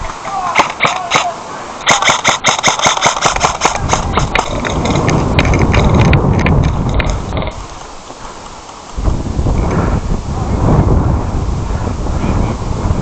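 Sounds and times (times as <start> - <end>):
airsoft gun shots: 0.4 - 5.0
loud low rushing noise: 9.0 - 13.0.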